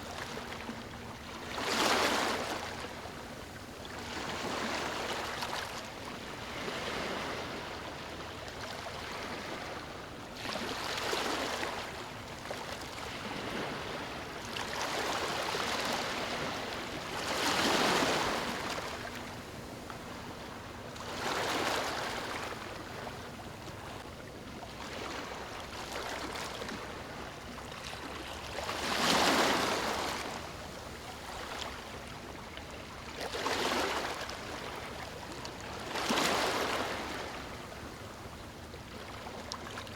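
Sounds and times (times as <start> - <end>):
ocean waves breaking: 9.0 - 24.0, 24.7 - 32.0.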